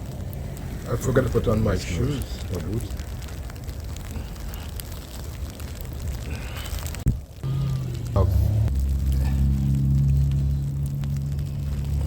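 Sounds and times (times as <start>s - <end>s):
low outdoor noise: 0.0s - 12.0s
music with held low note: 7.4s - 12.0s.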